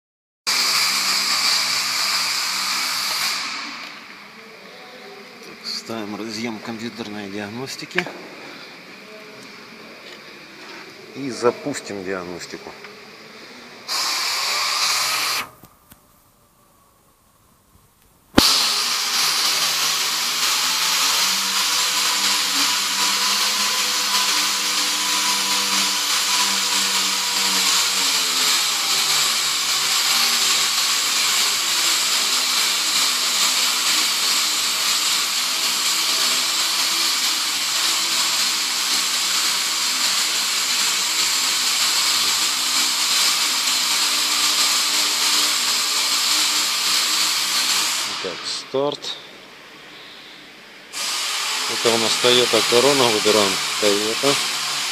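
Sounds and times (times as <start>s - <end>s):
mechanical whirring with hiss: 10.4s - 15.7s, 18.4s - 54.9s.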